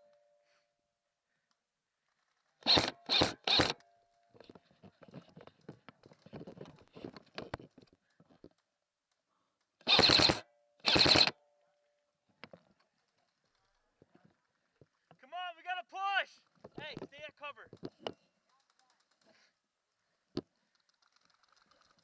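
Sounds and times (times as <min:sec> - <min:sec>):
gear clicks and rustling: 0:02.0 - 0:02.8, 0:03.6 - 0:10.2, 0:12.5 - 0:15.2, 0:16.4 - 0:19.5, 0:20.4 - 0:22.0
airsoft gun firing bursts: 0:02.6 - 0:03.8, 0:09.8 - 0:11.3.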